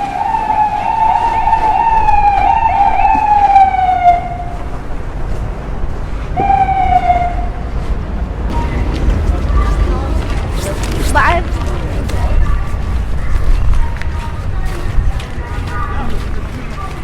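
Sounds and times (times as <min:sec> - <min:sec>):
emergency vehicle siren wailing: 0:00.0 - 0:04.8, 0:06.4 - 0:07.7, 0:08.5 - 0:12.4
street traffic noise: 0:00.0 - 0:17.0.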